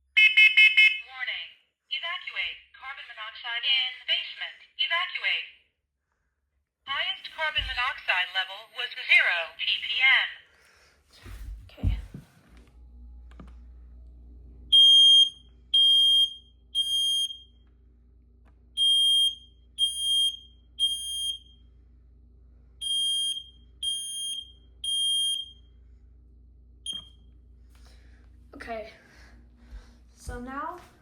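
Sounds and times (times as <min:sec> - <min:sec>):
smoke alarm chirp: 0:00.1 - 0:01.0, 0:14.7 - 0:17.6, 0:18.8 - 0:21.7, 0:22.8 - 0:25.8, 0:26.9 - 0:27.3
smoke alarm beeps: 0:00.2 - 0:01.0, 0:14.7 - 0:17.6, 0:18.8 - 0:21.7, 0:22.8 - 0:25.8, 0:26.9 - 0:27.3.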